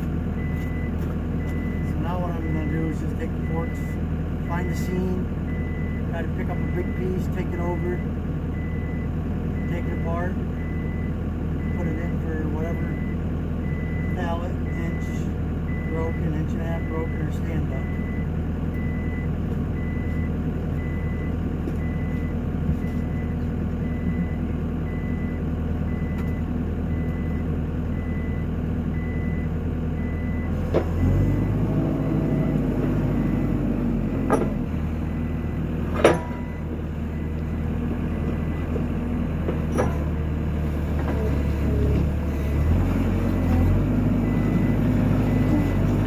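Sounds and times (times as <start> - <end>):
diesel engine running: 0.0 - 46.0
reversing alarm beeping: 0.4 - 33.5, 36.0 - 37.4, 44.2 - 45.8
sharp clunks: 34.2 - 34.6, 35.9 - 36.5, 39.5 - 40.1.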